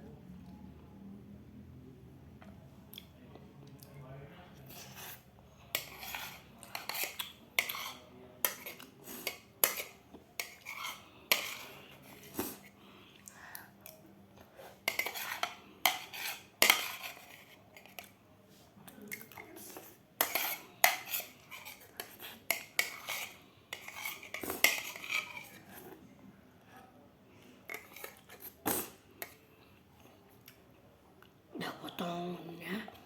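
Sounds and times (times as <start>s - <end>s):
cutlery clinking on a plate: 5.8s - 11.7s, 14.9s - 18.1s, 20.2s - 25.6s.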